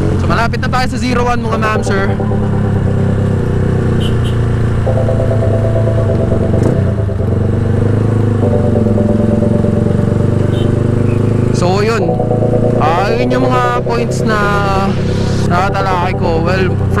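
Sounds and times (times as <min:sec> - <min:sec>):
motorcycle exhaust running loud: 0:00.0 - 0:12.9
higher tones: 0:01.2 - 0:04.0, 0:04.8 - 0:17.0.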